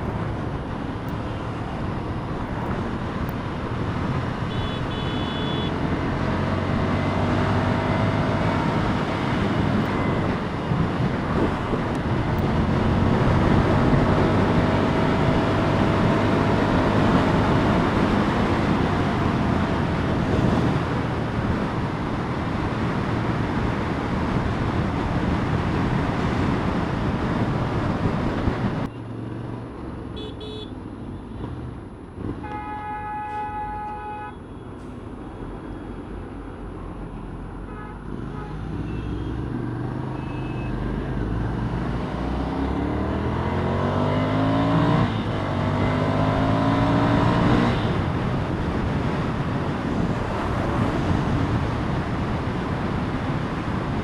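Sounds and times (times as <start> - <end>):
vehicle horn tooting: 4.5 - 5.8, 30.2 - 30.7, 32.4 - 34.5
wind noise: 6.2 - 28.9, 44.5 - 54.0.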